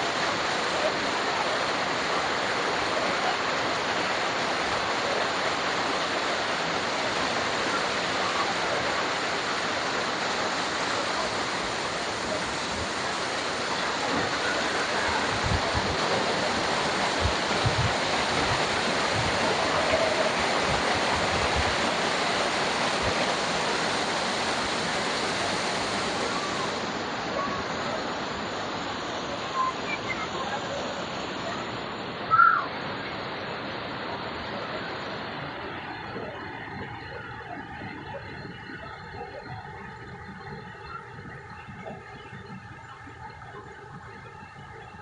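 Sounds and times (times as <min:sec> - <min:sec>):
waterfall roaring: 0:00.0 - 0:45.0
wind buffeting microphone: 0:12.1 - 0:27.5, 0:35.4 - 0:45.0.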